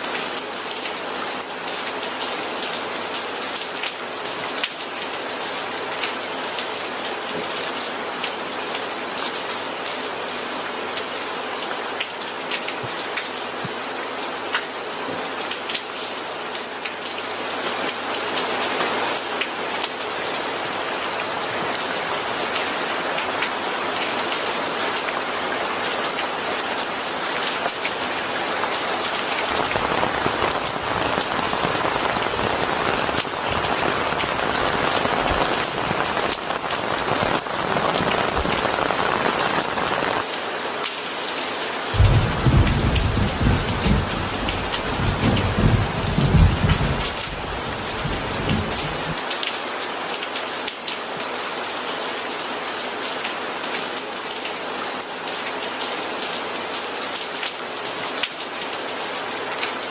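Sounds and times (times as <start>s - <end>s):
steady rain falling: 0.0s - 59.9s
thunder rumble: 29.5s - 39.7s, 42.0s - 49.2s.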